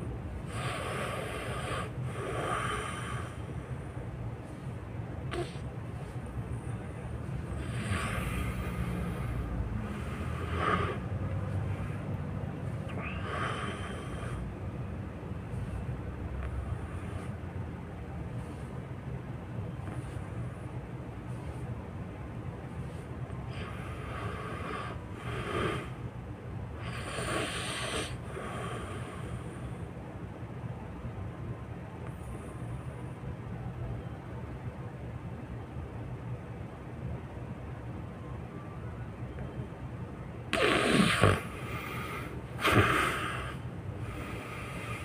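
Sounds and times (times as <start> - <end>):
steady low rumble: 0.0 - 45.0
person snoring: 5.3 - 5.6, 7.5 - 11.2, 12.9 - 14.4, 40.5 - 45.0.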